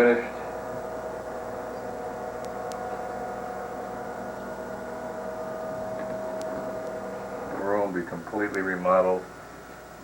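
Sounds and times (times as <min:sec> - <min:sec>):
electrical hum: 0:00.0 - 0:10.0
low hiss: 0:00.0 - 0:10.0.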